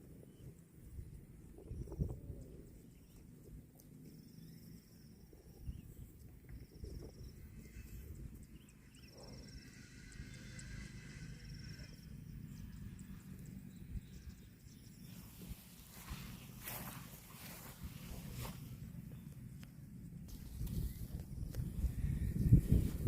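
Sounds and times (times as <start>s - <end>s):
grass torn and chewed: 15.0s - 23.0s.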